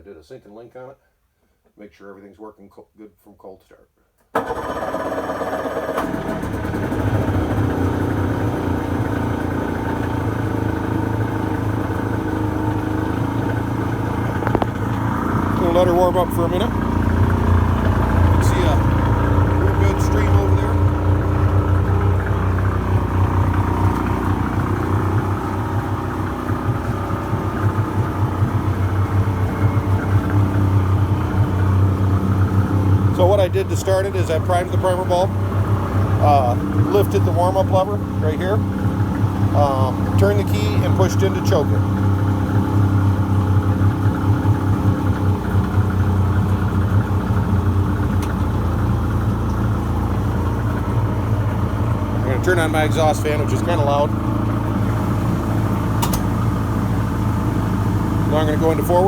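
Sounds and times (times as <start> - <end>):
outboard motor idling: 4.4 - 59.0.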